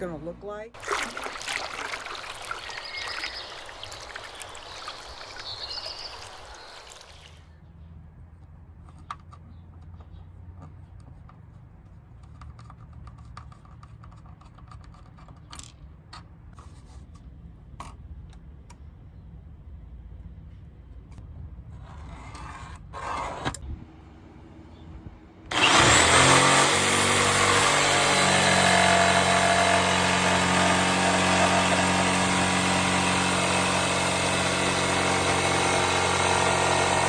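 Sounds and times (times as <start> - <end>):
water running into sink: 0.8 - 7.4.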